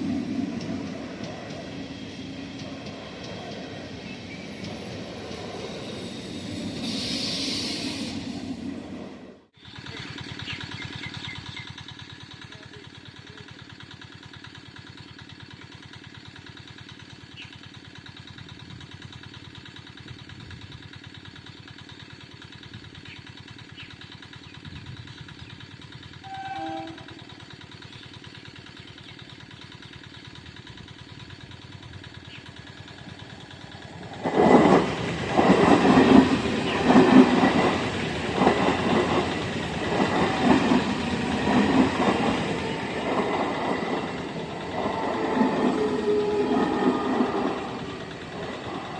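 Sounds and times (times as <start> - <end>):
train passing at speed: 0.0 - 48.9
train wheels clattering: 9.6 - 48.9
brief tone: 26.2 - 27.3.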